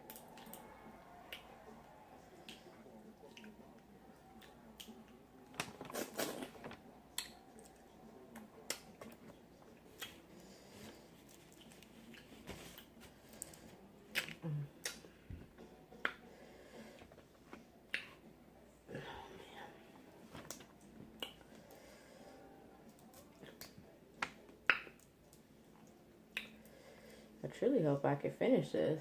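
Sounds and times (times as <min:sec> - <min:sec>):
open-mouth chewing and lip smacking: 0:07.1 - 0:09.2, 0:24.7 - 0:26.6.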